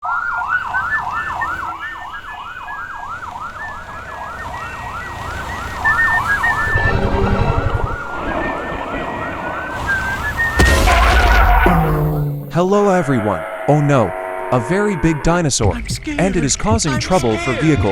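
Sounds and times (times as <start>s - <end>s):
siren yelping: 0.0s - 15.5s
low rumble: 6.7s - 14.2s.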